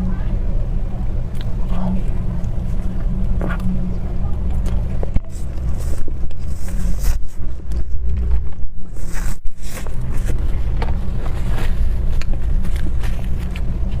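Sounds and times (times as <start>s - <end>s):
low rumble: 0.0s - 14.0s
chewing and mouth clicks: 1.3s - 6.5s.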